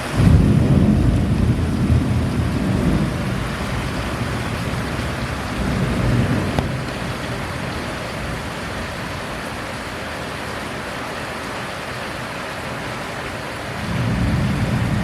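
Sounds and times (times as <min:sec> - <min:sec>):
low rumble of thunder: 0:00.0 - 0:10.0, 0:13.8 - 0:15.0
heavy rain falling: 0:00.0 - 0:15.0.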